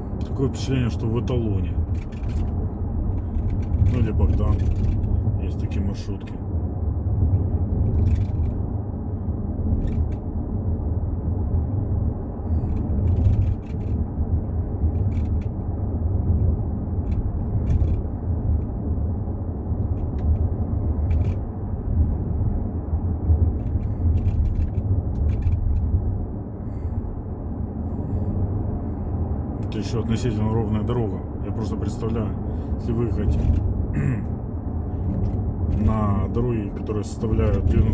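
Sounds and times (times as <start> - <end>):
low road rumble in car cabin: 0.0 - 37.9
sunroof creaks and ticks: 1.2 - 5.4, 7.2 - 10.6, 12.5 - 26.4, 32.0 - 37.9.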